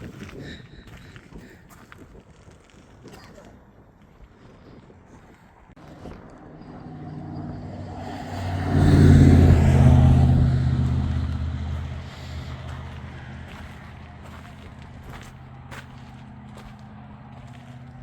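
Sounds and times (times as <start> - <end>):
vehicle engine passing: 5.8 - 18.0.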